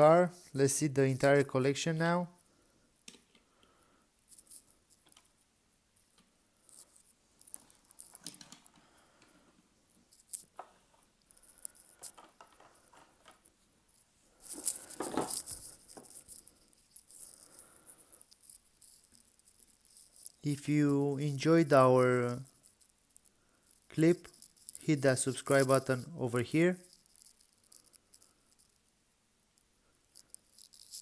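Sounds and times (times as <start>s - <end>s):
toy cars clicking and scraping: 10.1s - 13.6s, 14.4s - 31.0s.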